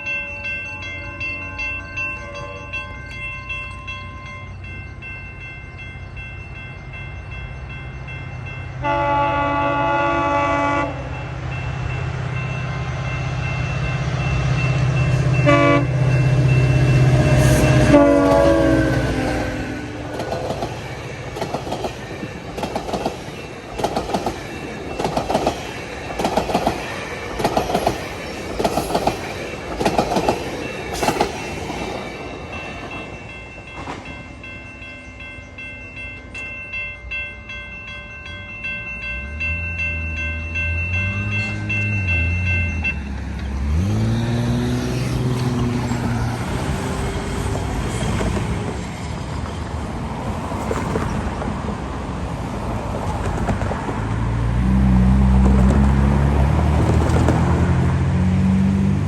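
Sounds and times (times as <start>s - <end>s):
crossing bells ringing: 0.0s - 53.9s
train horn blasts: 8.8s - 11.2s, 15.4s - 20.2s
train wheels clicking over rail joints: 16.4s - 34.3s, 41.3s - 58.0s.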